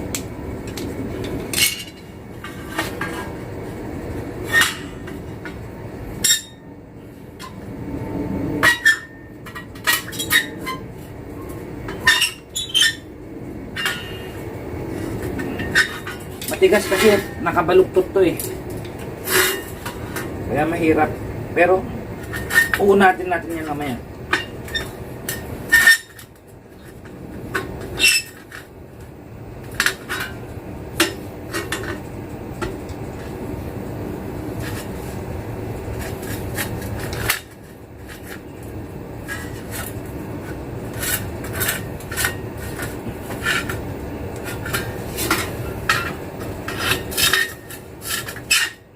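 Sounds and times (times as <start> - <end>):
metallic clanks of steel sheet: 44.4 - 48.8.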